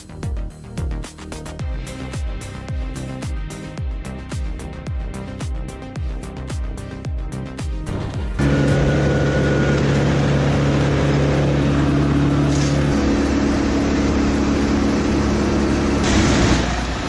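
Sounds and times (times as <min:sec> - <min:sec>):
dense mechanical noise: 0:07.8 - 0:17.0
diesel engine running under load: 0:07.8 - 0:17.0.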